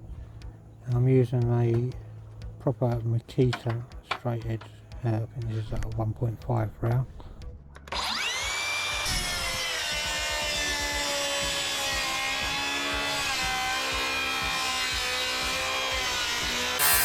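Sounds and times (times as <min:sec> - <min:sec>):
circular saw motor whine: 0:08.0 - 0:17.0.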